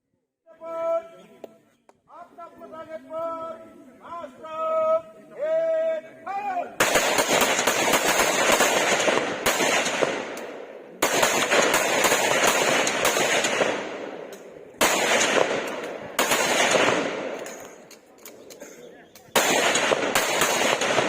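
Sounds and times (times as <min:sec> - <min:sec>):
automatic gunfire bursts: 0:06.8 - 0:10.4, 0:11.0 - 0:14.1, 0:14.8 - 0:17.4, 0:19.3 - 0:21.0.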